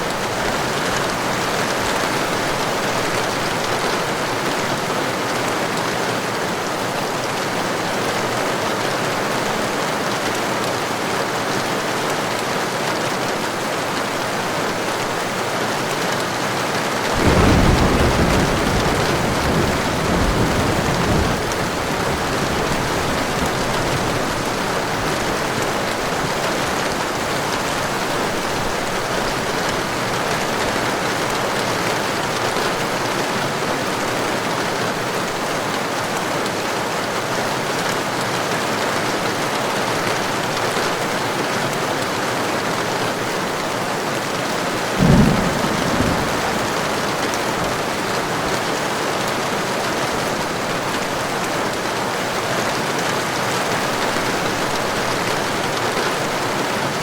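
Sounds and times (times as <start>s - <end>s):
heavy rain: 0.0s - 57.0s
thunder rumble: 17.2s - 28.0s, 44.9s - 48.6s.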